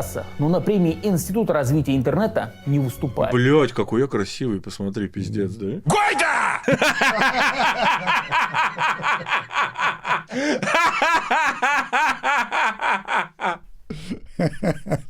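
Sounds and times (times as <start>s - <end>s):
loud rapid laughter: 6.0s - 15.0s.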